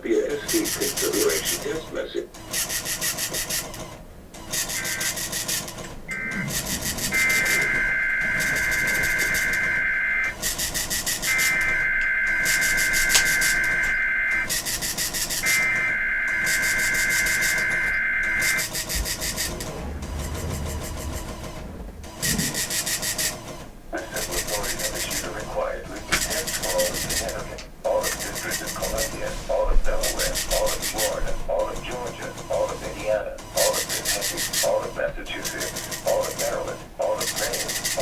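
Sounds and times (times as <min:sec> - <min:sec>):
harsh buzzy two-tone data screech: 0:00.0 - 0:38.0
radio static hiss: 0:00.0 - 0:38.0.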